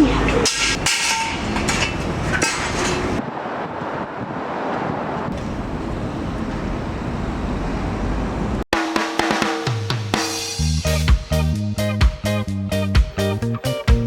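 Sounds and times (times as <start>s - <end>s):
outdoor background noise: 0.0s - 8.7s
wind buffeting microphone: 0.1s - 8.6s.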